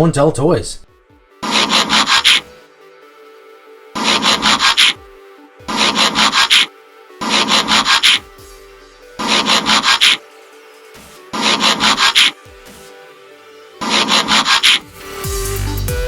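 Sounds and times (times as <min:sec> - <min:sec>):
noisy bursts of quick strokes: 0:01.4 - 0:02.5, 0:04.0 - 0:05.1, 0:05.7 - 0:08.4, 0:09.2 - 0:10.3, 0:11.0 - 0:12.9, 0:13.8 - 0:15.0.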